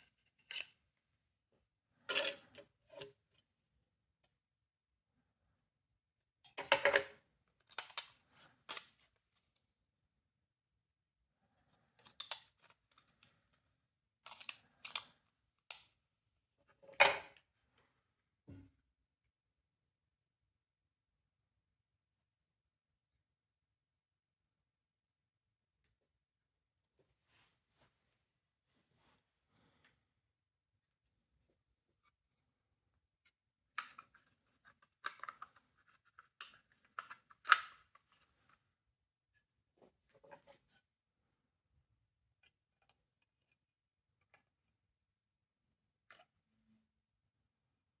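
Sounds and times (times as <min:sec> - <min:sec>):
clicks and snaps of plastic parts: 0:14.3 - 0:15.9, 0:33.8 - 0:38.0
small plastic parts clicking: 0:14.3 - 0:15.9.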